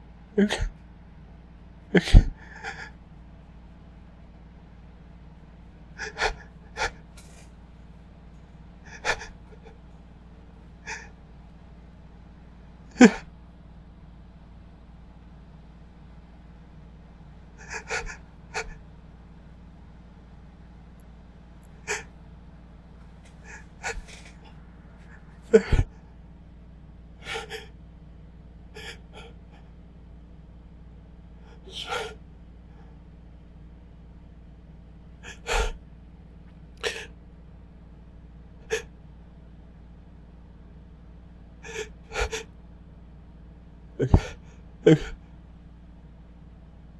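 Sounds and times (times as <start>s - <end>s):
sneeze: 0.4s - 0.7s, 25.6s - 25.9s, 31.7s - 32.2s
person gasping before a sneeze: 23.5s - 24.4s, 25.5s - 25.9s, 31.7s - 32.2s, 35.2s - 35.8s, 36.8s - 37.1s, 44.0s - 45.2s.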